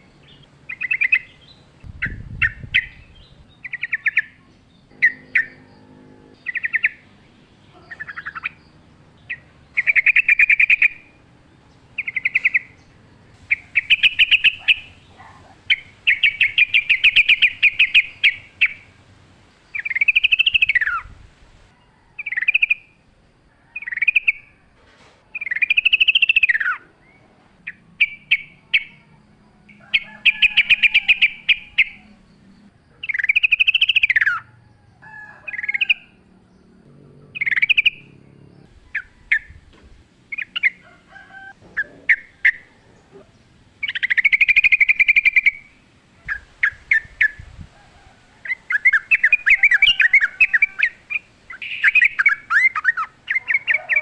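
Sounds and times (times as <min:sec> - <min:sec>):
bird whistled song: 0:00.0 - 0:08.7, 0:12.0 - 0:12.8, 0:13.4 - 0:19.0, 0:19.7 - 0:21.2, 0:25.4 - 0:29.0, 0:33.0 - 0:34.4, 0:37.4 - 0:38.1, 0:40.3 - 0:47.6, 0:48.4 - 0:54.0.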